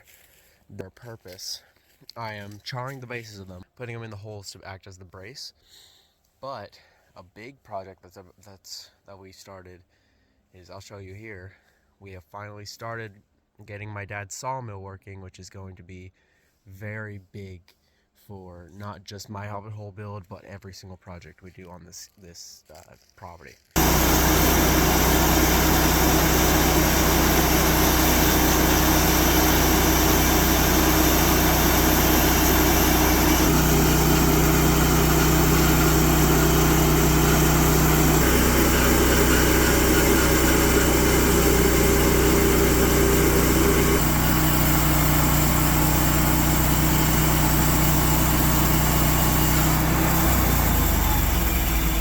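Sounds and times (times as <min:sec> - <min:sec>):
sawmill engine droning: 0:23.8 - 0:52.0.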